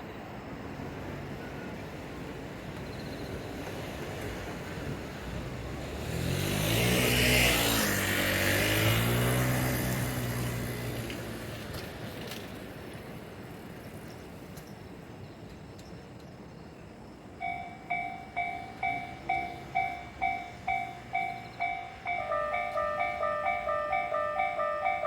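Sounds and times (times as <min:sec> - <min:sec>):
vehicle passing by: 0:05.2 - 0:11.8.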